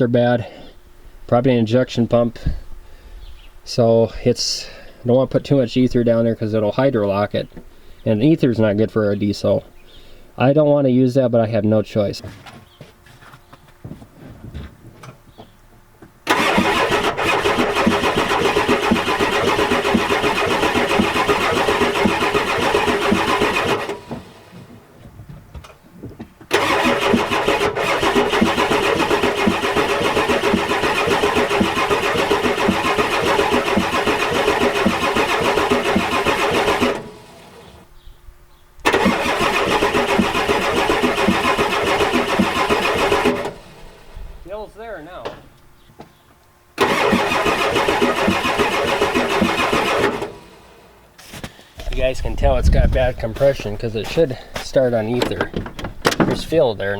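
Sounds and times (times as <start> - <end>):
diesel engine cranking: 16.2 - 24.9, 26.4 - 45.9, 46.7 - 56.9.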